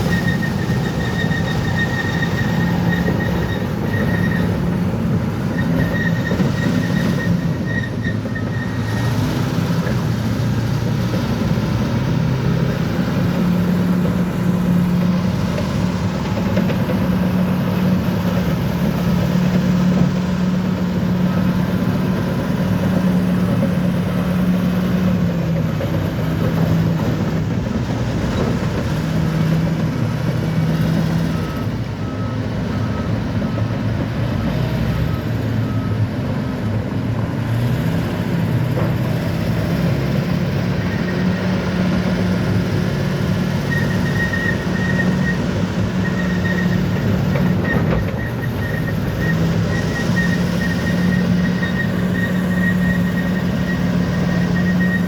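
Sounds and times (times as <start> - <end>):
high-pitched squeal: 0.0 - 4.7
bulldozer diesel engine running: 0.0 - 55.0.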